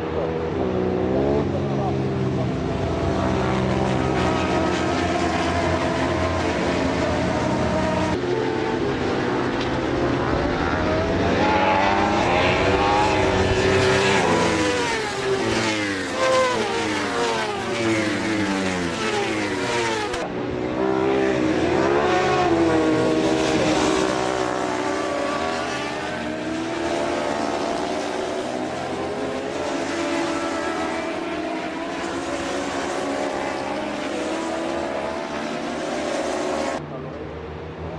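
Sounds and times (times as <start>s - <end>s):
racing motorcycles revving past: 0.1s - 36.8s.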